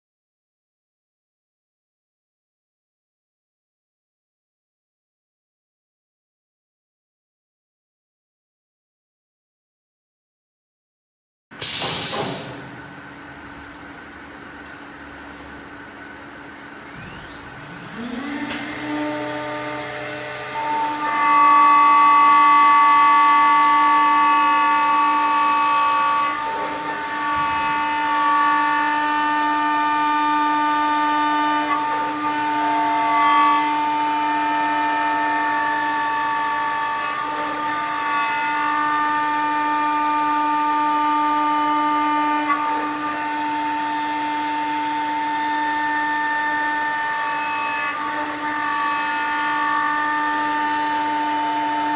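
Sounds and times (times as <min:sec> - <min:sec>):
machine spindle whining: 0:12.1 - 0:51.9.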